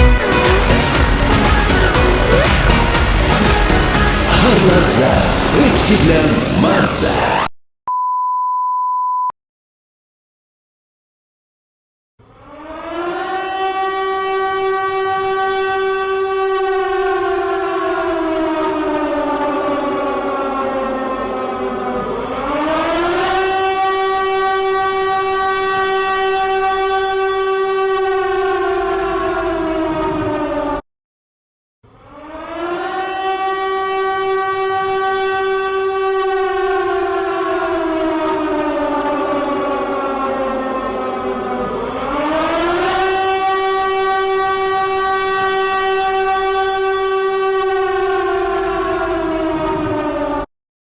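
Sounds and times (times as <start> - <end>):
air-raid siren wailing: 0.0 - 7.5, 12.2 - 30.8, 31.9 - 50.5.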